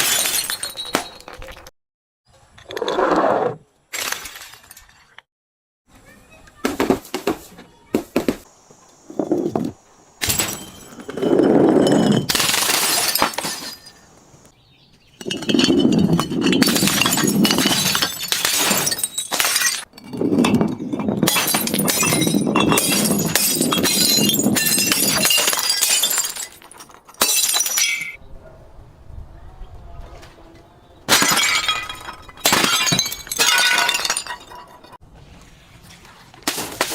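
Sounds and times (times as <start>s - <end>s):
glass crunching and shattering: 0.0s - 1.7s, 3.9s - 5.2s, 10.2s - 14.1s, 15.2s - 28.2s, 31.1s - 35.0s.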